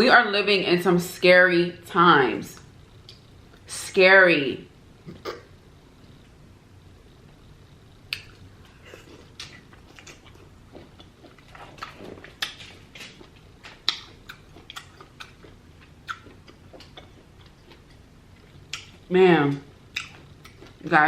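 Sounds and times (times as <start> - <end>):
person chewing and smacking food: 8.1 - 20.9.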